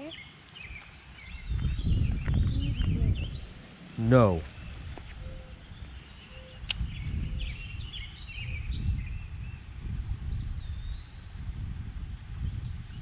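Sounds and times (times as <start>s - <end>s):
birds chirping: 0.0s - 11.7s
wind rumble on microphone: 0.0s - 13.0s
bird whistled call: 5.2s - 9.6s, 10.4s - 11.6s
sharp click: 6.6s - 6.9s.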